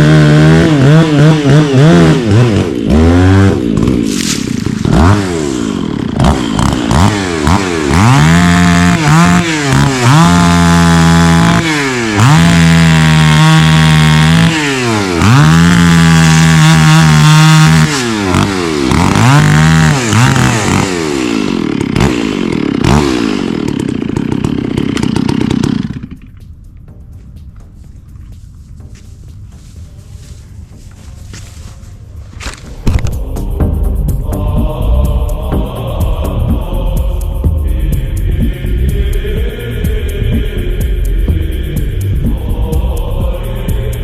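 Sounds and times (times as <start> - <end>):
chainsaw cutting into tree: 0.0 - 26.5.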